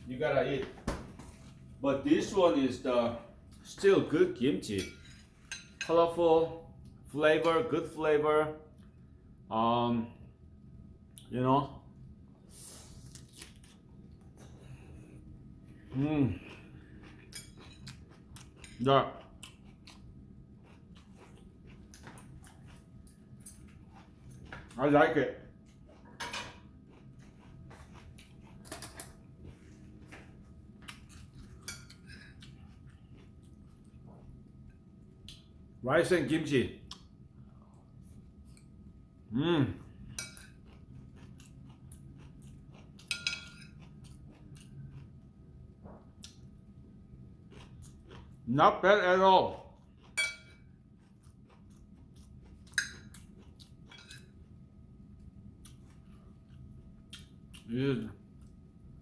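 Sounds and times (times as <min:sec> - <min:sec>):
utensils clinking against a bowl: 0:04.6 - 0:06.1, 0:31.6 - 0:32.6, 0:40.2 - 0:40.6, 0:43.0 - 0:43.8, 0:50.1 - 0:50.6, 0:53.9 - 0:54.3
person chewing food: 0:13.1 - 0:24.8, 0:25.6 - 0:35.6, 0:39.8 - 0:48.5, 0:49.7 - 0:58.7.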